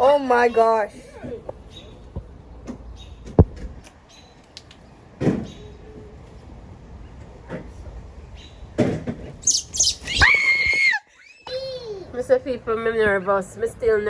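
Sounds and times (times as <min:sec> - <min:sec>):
high chirping: 0:09.4 - 0:10.4.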